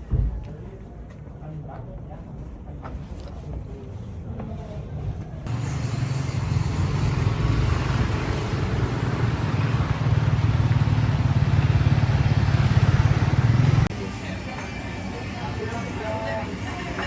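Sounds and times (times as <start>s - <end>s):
vehicle engine and road rumble: 5.4s - 13.9s.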